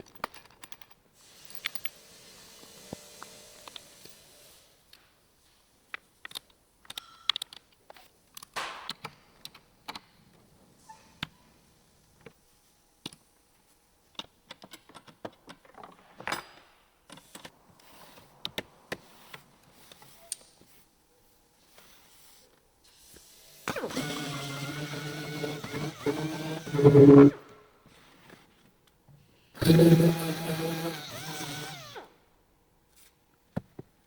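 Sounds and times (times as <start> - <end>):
short scraping: 25.7 - 27.6.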